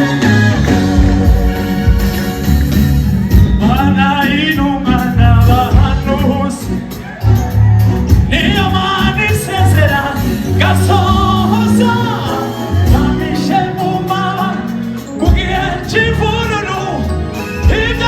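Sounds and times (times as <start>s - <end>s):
backing music with bass line: 0.0s - 18.0s
gospel choir singing: 8.3s - 18.0s.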